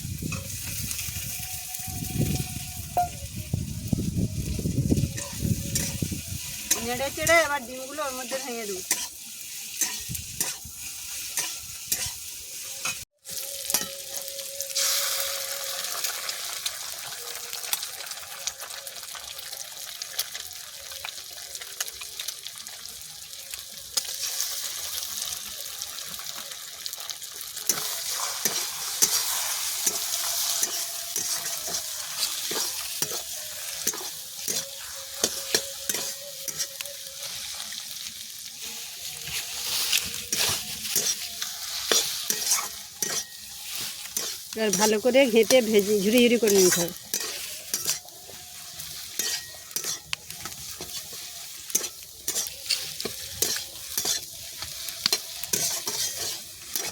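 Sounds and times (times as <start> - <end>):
food sizzling in oil: 0.0 - 56.9
spatula scraping a pan: 4.4 - 15.9, 27.6 - 56.9.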